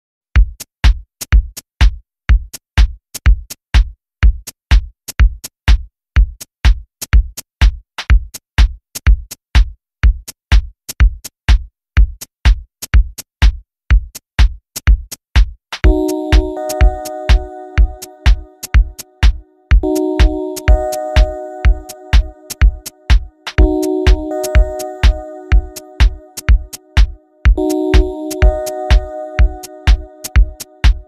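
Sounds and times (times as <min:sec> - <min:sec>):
fast drum beat: 0:15.8 - 0:17.4, 0:18.3 - 0:21.3, 0:22.1 - 0:31.0
held chords: 0:15.8 - 0:31.0.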